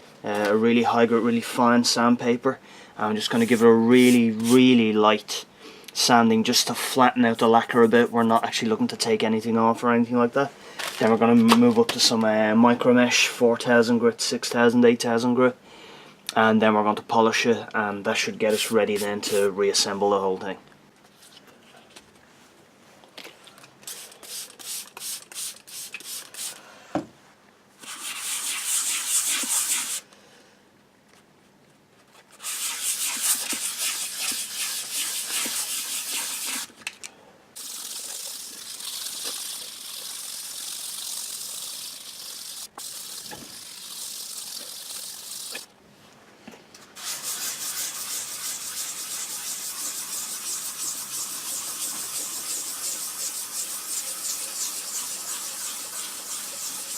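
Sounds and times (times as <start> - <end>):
sandpaper rubbing: 3.2 - 4.7, 18.4 - 19.6, 23.9 - 26.6, 27.8 - 30.0, 32.3 - 36.7, 37.6 - 45.7, 47.0 - 56.9.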